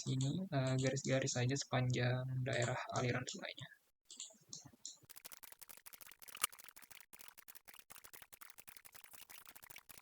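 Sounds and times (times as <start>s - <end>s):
rapid computer mouse clicks: 4.1s - 10.0s.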